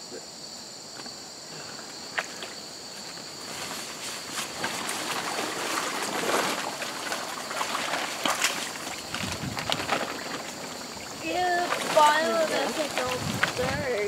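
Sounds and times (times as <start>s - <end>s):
crickets chirring: 0.0s - 14.0s
water trickling and splattering: 4.8s - 14.0s.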